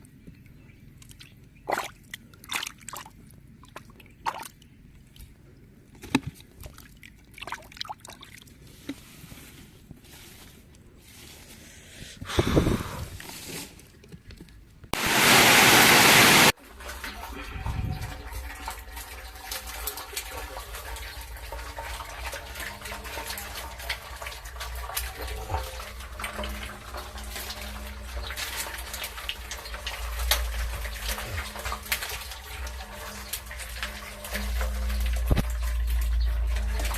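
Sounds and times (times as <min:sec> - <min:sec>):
water rushing and splashing: 0:15.0 - 0:16.6.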